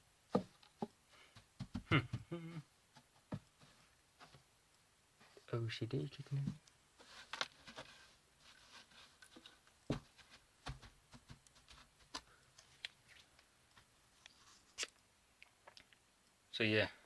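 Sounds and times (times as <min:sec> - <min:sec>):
rustling of wood shavings: 0:05.2 - 0:13.4.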